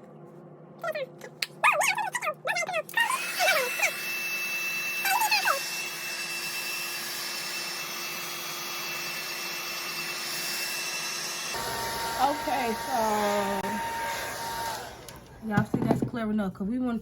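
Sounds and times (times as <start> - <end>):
dog whimpering: 0.8 - 3.9
blow dryer with high whine: 2.9 - 15.4.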